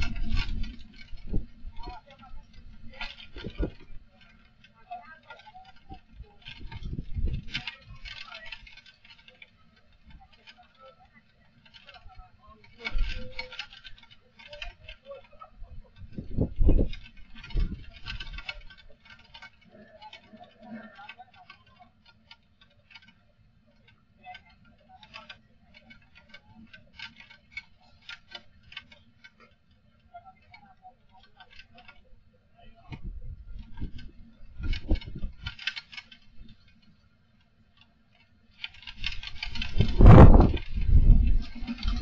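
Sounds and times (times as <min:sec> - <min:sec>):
wind buffeting microphone: 0:00.0 - 0:04.0, 0:05.9 - 0:08.1, 0:15.6 - 0:18.4, 0:32.9 - 0:35.5, 0:39.0 - 0:42.0
ticking and rattling clicks: 0:00.0 - 0:42.0
strong wind on microphone: 0:16.0 - 0:17.9, 0:39.4 - 0:42.0.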